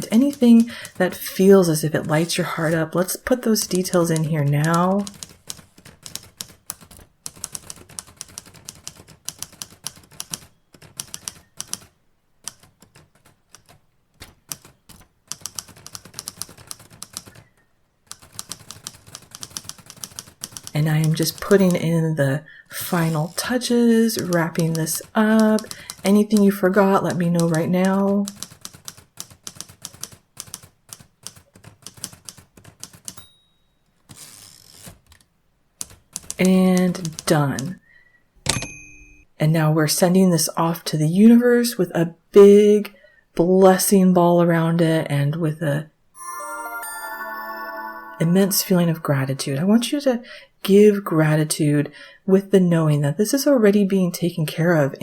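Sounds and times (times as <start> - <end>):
typewriter keys clacking: 27.4 - 33.2.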